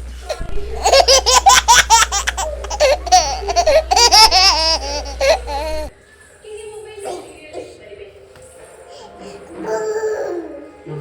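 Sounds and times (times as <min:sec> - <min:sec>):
child laughing and squealing: 0:00.5 - 0:05.9.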